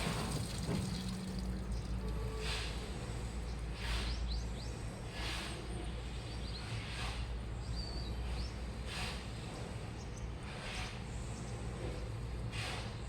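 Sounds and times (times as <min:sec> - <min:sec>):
water and laundry sloshing: 0:00.0 - 0:02.7.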